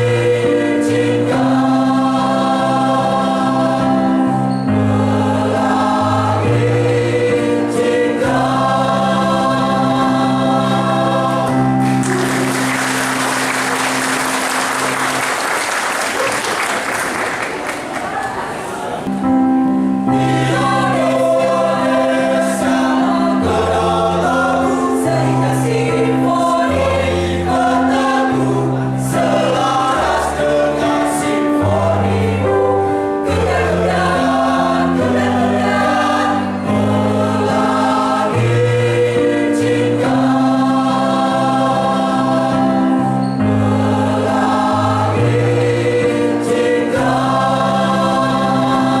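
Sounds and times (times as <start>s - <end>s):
choir singing with accompaniment: 0.0s - 15.4s, 18.2s - 49.0s
applause: 11.8s - 18.5s.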